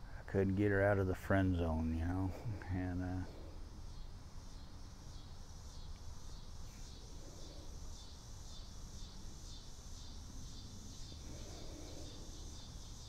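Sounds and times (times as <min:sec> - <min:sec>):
low steady hum: 0:00.0 - 0:13.0
night insects chirping: 0:00.0 - 0:13.0.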